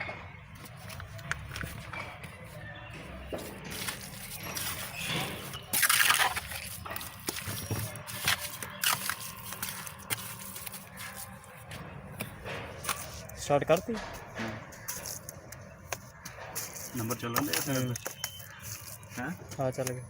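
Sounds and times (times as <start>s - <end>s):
wet mortar scraping and sloshing: 3.4s - 11.8s
sharp knocks: 11.8s - 18.2s.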